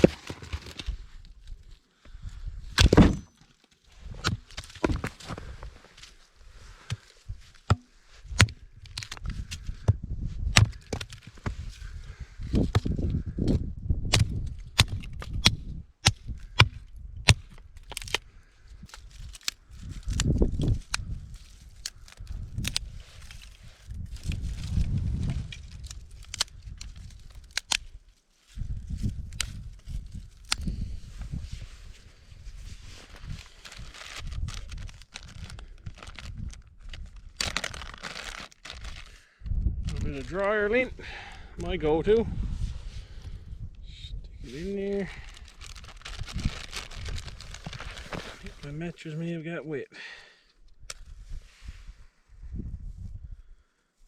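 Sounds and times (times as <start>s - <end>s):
dry wood cracking and knocking: 0.0s - 6.2s, 6.8s - 11.9s, 12.5s - 30.8s, 32.9s - 39.2s, 39.8s - 42.2s, 44.5s - 48.8s
crunching and crinkling handling: 0.0s - 13.1s, 17.3s - 42.2s, 44.4s - 49.2s.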